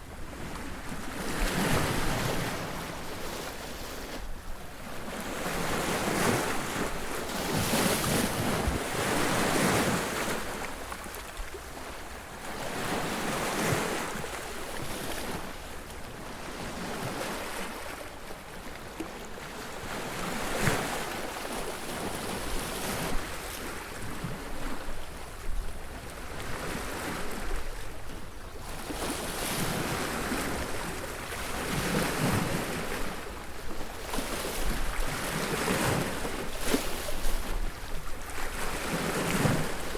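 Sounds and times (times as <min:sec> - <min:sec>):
waves crashing on beach: 0:05.0 - 0:11.1.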